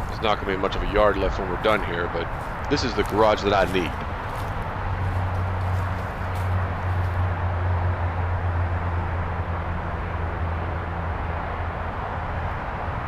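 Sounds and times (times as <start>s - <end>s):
heavy machinery engine running: 0.0s - 8.7s.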